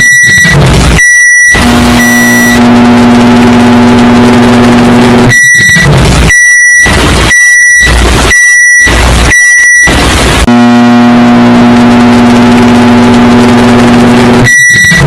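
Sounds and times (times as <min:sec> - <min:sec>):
microwave high beeps: 0:00.0 - 0:03.8, 0:05.3 - 0:10.0, 0:14.5 - 0:15.0.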